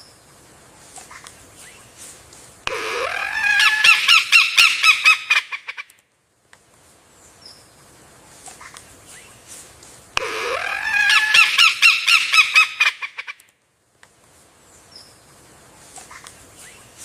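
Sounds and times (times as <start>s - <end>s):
lyrebird singing: 2.7s - 5.7s, 10.2s - 13.3s
faint bird calls: 10.2s - 13.4s.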